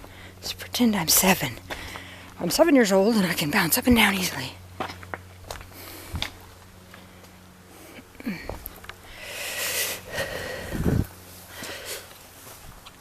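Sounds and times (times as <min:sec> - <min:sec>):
person breathing hard: 0:01.7 - 0:02.4, 0:07.7 - 0:12.1.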